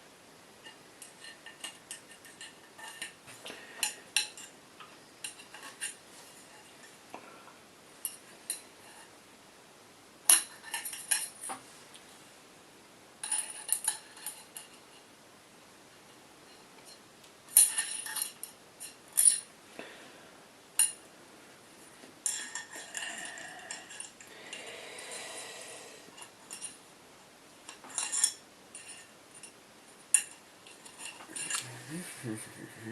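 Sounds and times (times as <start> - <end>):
small metal parts clinking: 13.2 - 14.8, 16.8 - 19.5.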